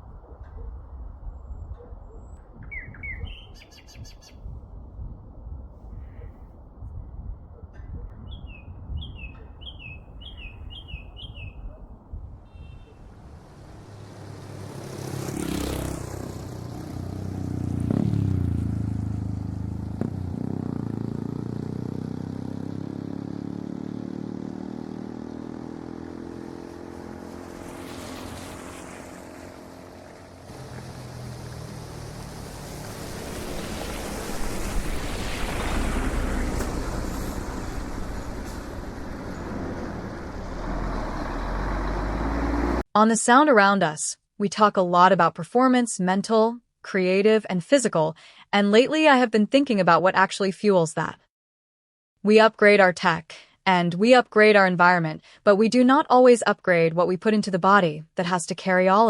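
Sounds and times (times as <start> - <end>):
bird chirping: 2.2 - 4.4, 8.2 - 11.8
vehicles passing: 9.4 - 42.8.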